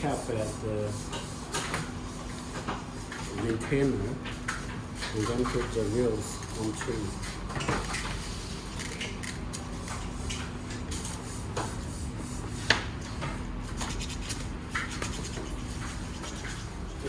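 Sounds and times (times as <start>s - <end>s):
steady low hum: 0.0s - 17.0s
metal parts clicking and rubbing: 8.7s - 9.6s.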